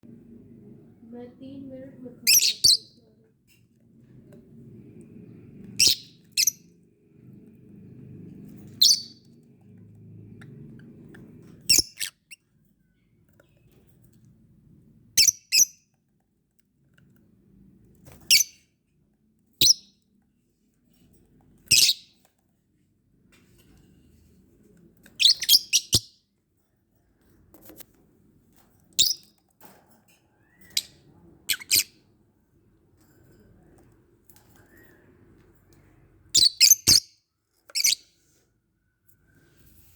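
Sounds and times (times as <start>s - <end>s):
lovebird chirping: 2.3s - 3.0s, 5.8s - 6.6s, 8.8s - 9.2s, 11.7s - 12.3s, 19.6s - 19.9s, 21.7s - 22.1s, 25.2s - 26.2s, 29.0s - 29.2s, 30.6s - 31.9s, 36.3s - 38.0s.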